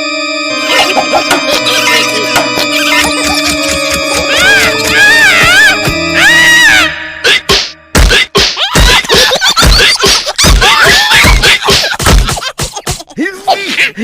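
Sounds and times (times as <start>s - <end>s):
cartoon voices chattering gibberish: 0.7s - 5.5s
cartoon hiccup and impact thumps: 7.3s - 8.6s.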